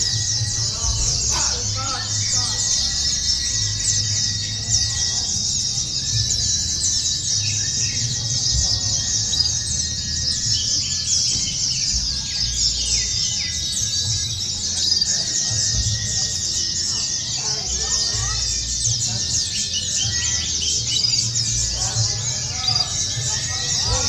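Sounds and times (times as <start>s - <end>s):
low rumble: 0.0s - 5.4s
songbirds twittering chorus: 0.0s - 24.0s.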